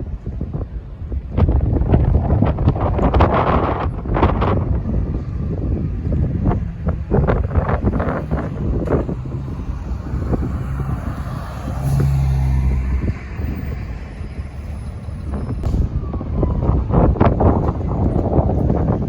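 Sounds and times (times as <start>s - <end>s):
wind buffeting microphone: 0.0s - 19.0s
bus engine humming: 3.8s - 19.0s.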